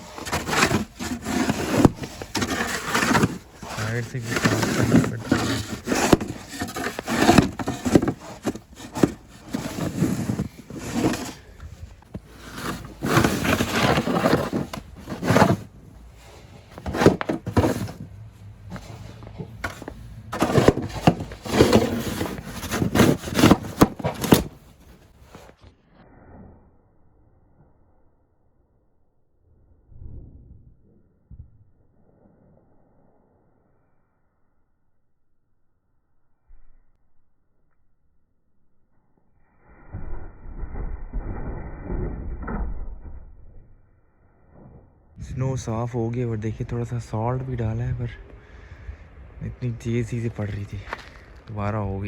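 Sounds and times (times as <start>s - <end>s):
snow shovel scraping pavement: 0.0s - 25.5s.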